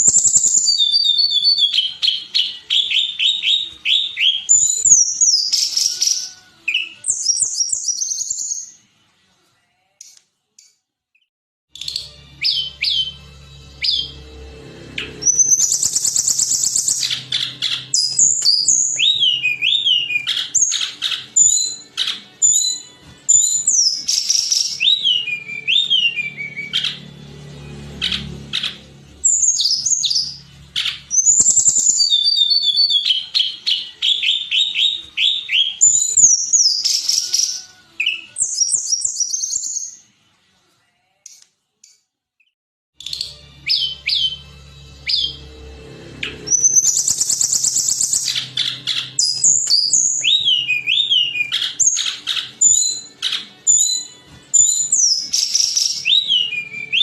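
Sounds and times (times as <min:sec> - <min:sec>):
bird singing whistles and trills: 0:00.0 - 0:08.8, 0:15.0 - 0:27.0, 0:28.0 - 0:40.0, 0:43.0 - 0:45.4, 0:46.2 - 0:57.0.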